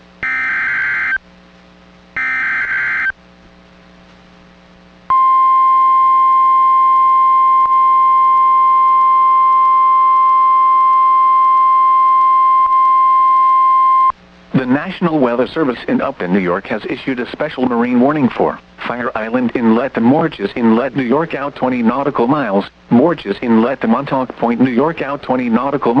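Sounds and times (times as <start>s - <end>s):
steady warning alarm tone: 0.2s - 1.2s, 2.2s - 3.2s
buzzy warbling data bursts: 2.2s - 3.1s.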